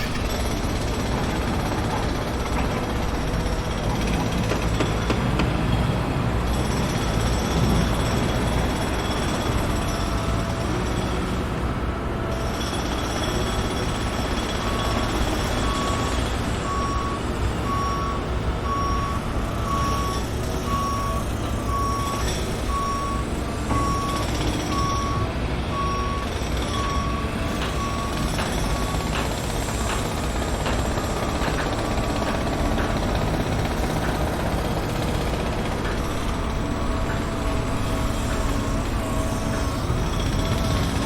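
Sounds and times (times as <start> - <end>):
backup alarm beeping: 15.6 - 29.2
diesel engine rumble: 32.2 - 41.0.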